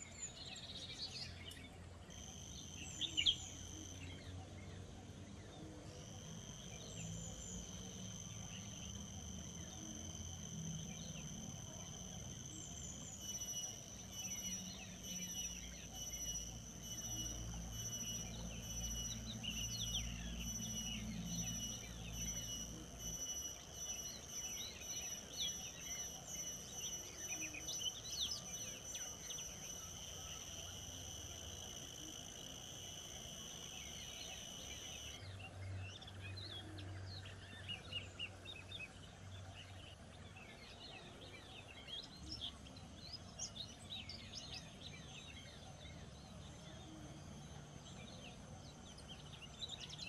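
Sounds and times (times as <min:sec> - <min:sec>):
birds chirping: 0:00.0 - 0:50.0
high-pitched insect drone: 0:02.1 - 0:04.5, 0:05.8 - 0:35.4.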